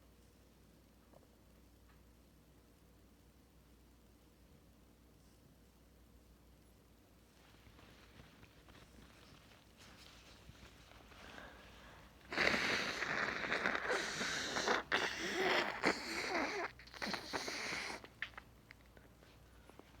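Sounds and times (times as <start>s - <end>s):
person blowing nose: 12.2s - 18.4s.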